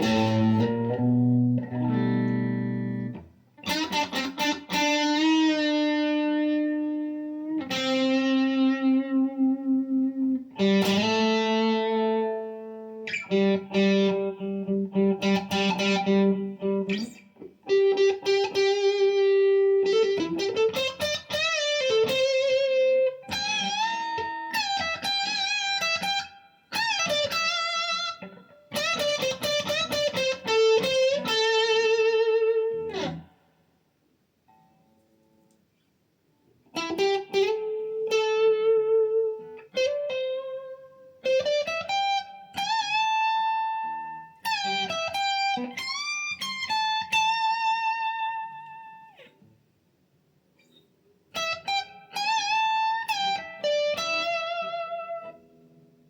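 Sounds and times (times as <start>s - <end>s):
electric guitar lead lines: 0.0s - 33.4s, 36.7s - 49.5s, 50.6s - 56.0s.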